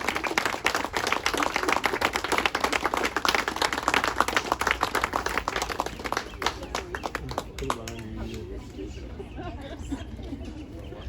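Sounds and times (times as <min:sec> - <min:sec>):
crowd applauding: 0:00.0 - 0:08.4.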